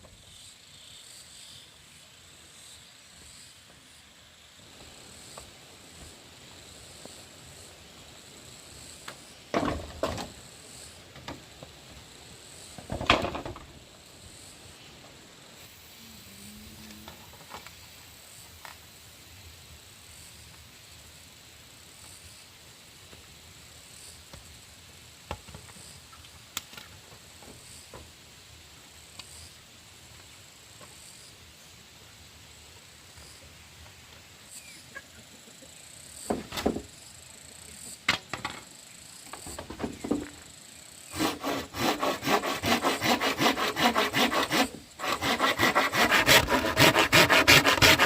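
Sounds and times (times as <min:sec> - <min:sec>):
high insect chirp: 0:00.0 - 0:25.1, 0:27.5 - 0:48.0
clattering knocks and scrapes: 0:12.8 - 0:13.7.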